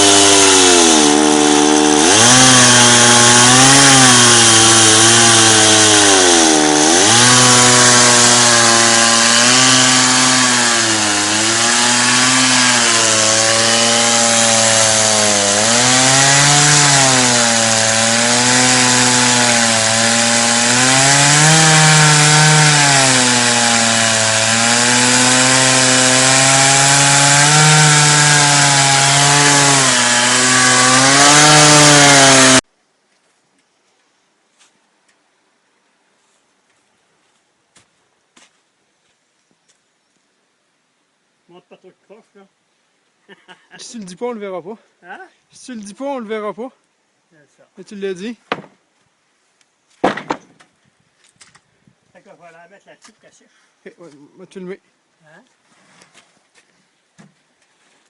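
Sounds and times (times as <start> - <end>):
chainsaw cutting log: 0.0 - 32.6, 48.5 - 48.8, 50.0 - 50.7.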